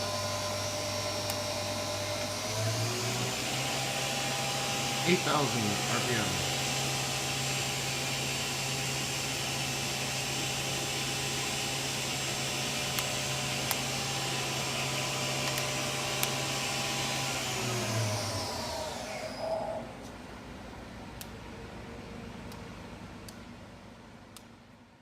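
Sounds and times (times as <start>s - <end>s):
mill spindle whining: 0.0s - 20.1s.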